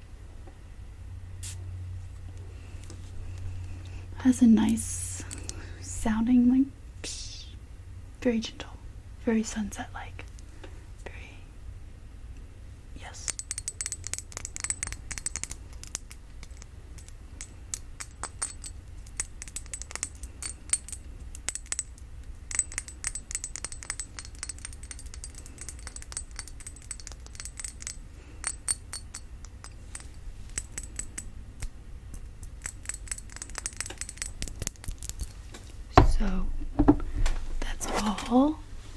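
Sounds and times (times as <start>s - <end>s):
tapping on glass bottle: 13.2s - 31.3s, 36.0s - 37.7s.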